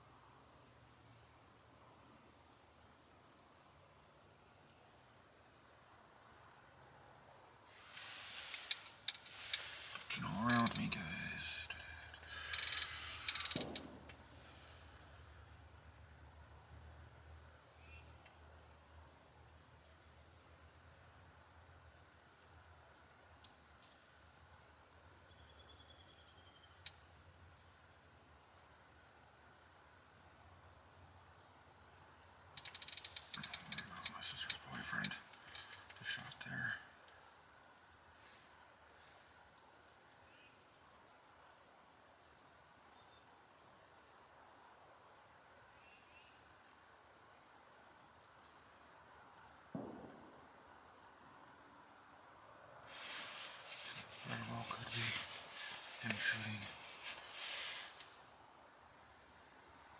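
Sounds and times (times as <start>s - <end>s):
songbirds chirping: 0.0s - 59.9s
sharp clicks: 11.7s - 14.3s
faint high bird chirps: 23.1s - 27.1s.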